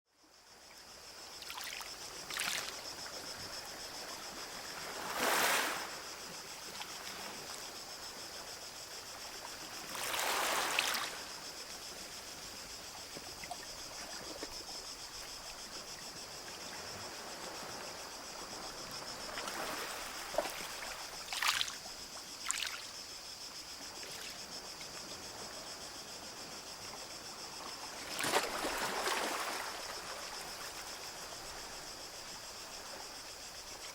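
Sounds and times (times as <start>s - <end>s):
sea waves washing onto beach: 5.0s - 6.1s.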